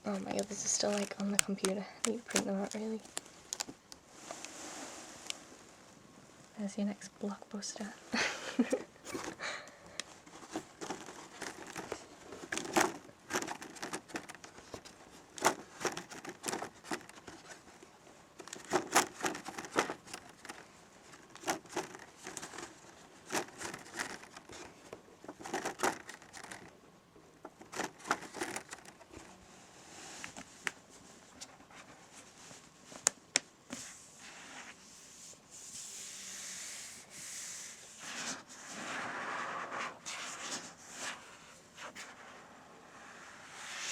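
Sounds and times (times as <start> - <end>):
plastic folder and paper crinkling: 0.1 - 4.4, 8.6 - 26.8, 27.4 - 29.4.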